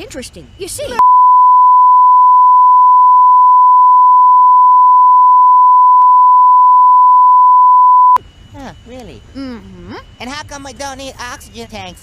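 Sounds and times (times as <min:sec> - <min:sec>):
censor bleep tone: 0:01.0 - 0:08.2.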